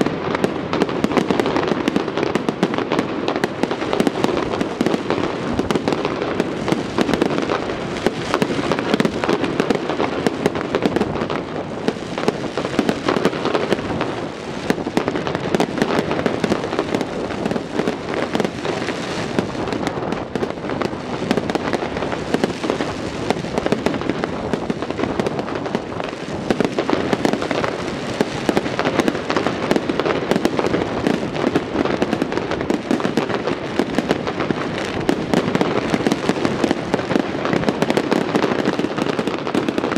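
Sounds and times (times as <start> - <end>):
fireworks bangs and crackling: 0.0 - 39.9.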